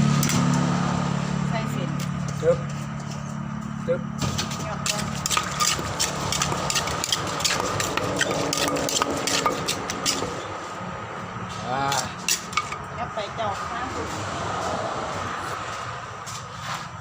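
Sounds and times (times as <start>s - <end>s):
pestle pounding in a mortar: 4.2s - 10.5s.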